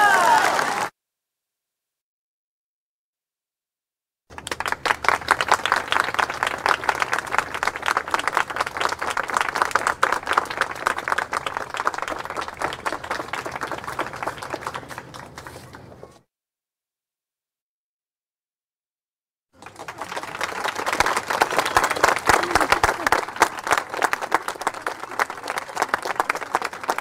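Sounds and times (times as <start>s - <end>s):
large crowd applauding: 0.0s - 0.9s, 4.3s - 16.0s, 19.6s - 27.0s.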